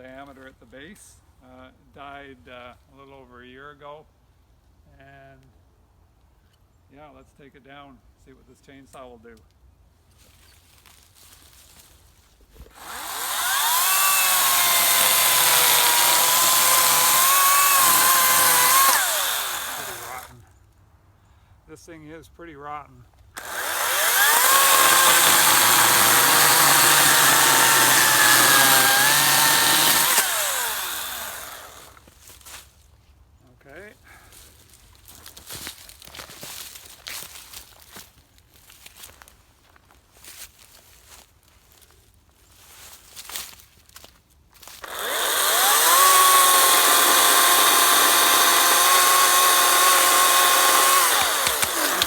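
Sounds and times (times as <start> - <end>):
electric chainsaw whining: 12.6 - 20.4, 23.4 - 32.1, 44.8 - 52.0.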